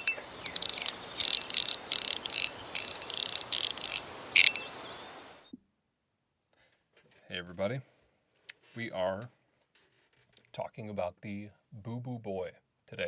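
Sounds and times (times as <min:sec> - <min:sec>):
fidget slider clicking: 0:00.0 - 0:04.8.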